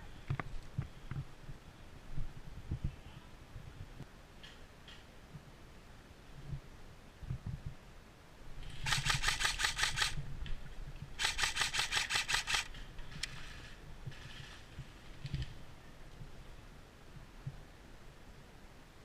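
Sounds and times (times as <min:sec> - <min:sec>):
airsoft gun firing rapid bursts: 0:08.6 - 0:10.2, 0:11.2 - 0:12.8.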